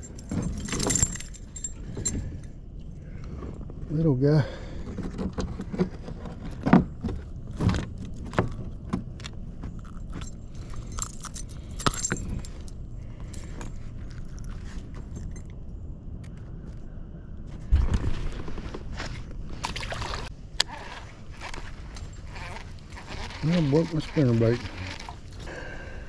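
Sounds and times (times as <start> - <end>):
fishing tackle jingling: 0.0 - 3.0, 9.8 - 15.6, 20.7 - 25.8
steady low rumble: 0.0 - 26.0.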